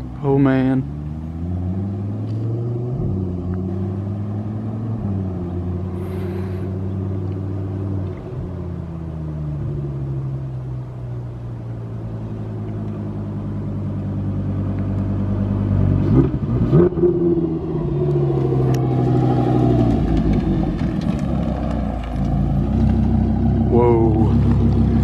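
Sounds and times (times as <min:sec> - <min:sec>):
car engine running: 0:00.0 - 0:25.0.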